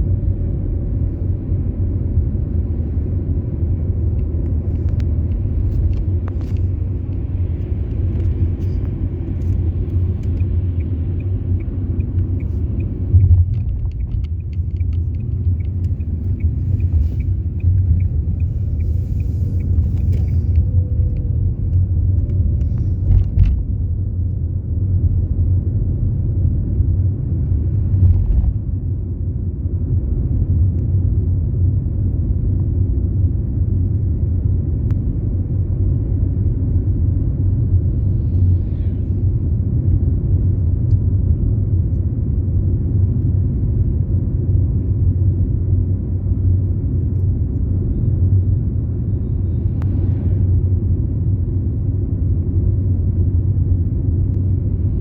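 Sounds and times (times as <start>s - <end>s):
car engine rumble: 0.0s - 55.0s
road noise: 0.0s - 55.0s
light fast ticking: 13.9s - 20.6s.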